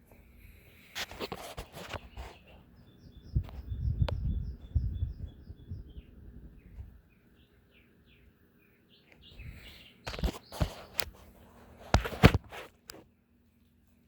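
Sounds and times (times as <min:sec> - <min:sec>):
small bird chirping: 0:00.5 - 0:11.4.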